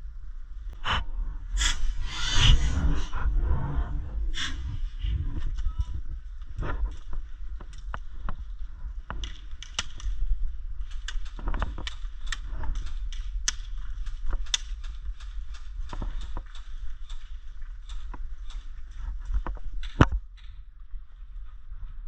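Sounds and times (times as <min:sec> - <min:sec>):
low rumble: 0:00.0 - 0:18.4
sharp clicks and knocks: 0:09.0 - 0:20.6.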